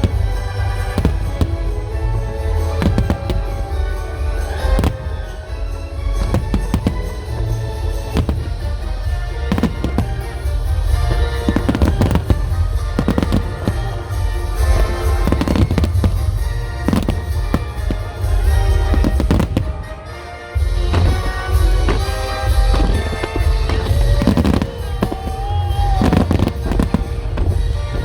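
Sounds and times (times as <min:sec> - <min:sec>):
fireworks bursting: 0:00.0 - 0:28.0
music playing: 0:00.0 - 0:28.0
deep booming rumble: 0:20.6 - 0:28.0.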